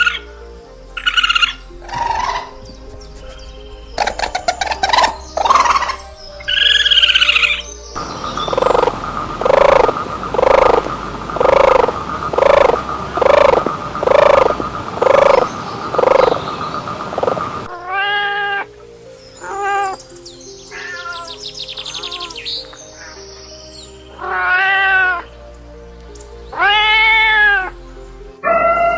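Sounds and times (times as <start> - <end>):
animal calling: 1.0 - 18.8, 19.4 - 20.0, 20.6 - 25.4, 26.5 - 27.8, 28.4 - 28.9
cat-like meows: 17.7 - 18.7, 24.2 - 25.2, 26.6 - 27.6.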